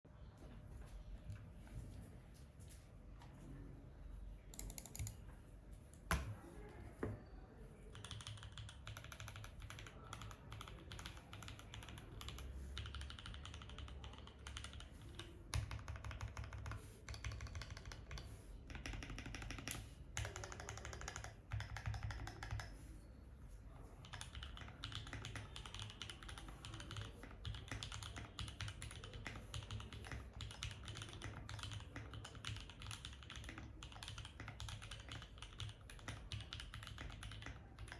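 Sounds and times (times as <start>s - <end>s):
mechanical keyboard typing: 4.5s - 5.3s, 7.9s - 22.9s, 24.0s - 37.9s.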